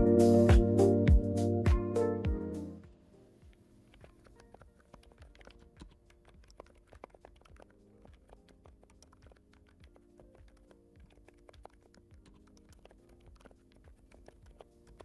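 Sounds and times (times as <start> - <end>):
soft mechanical keyboard typing: 3.9 - 15.0.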